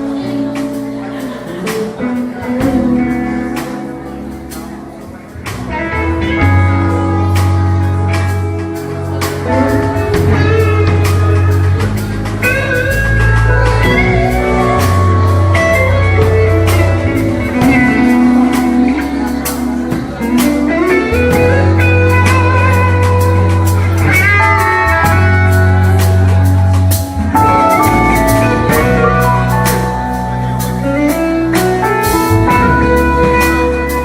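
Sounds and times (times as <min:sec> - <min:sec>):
band playing instrumental: 0:00.0 - 0:34.0
guitar melodic lines: 0:00.0 - 0:34.0.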